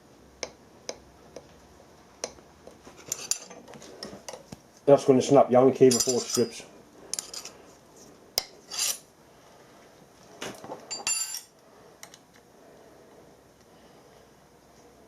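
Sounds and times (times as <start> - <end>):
tool scraping metal: 2.9 - 3.7, 5.9 - 7.6, 8.4 - 9.1
steel tools clinking on metal: 5.9 - 7.5, 10.9 - 11.5.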